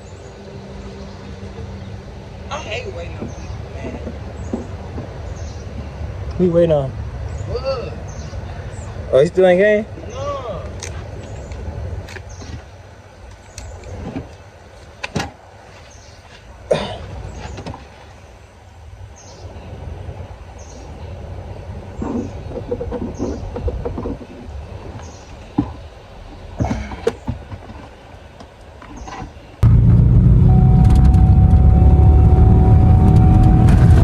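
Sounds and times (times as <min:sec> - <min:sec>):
low steady rumble: 0:29.6 - 0:34.0.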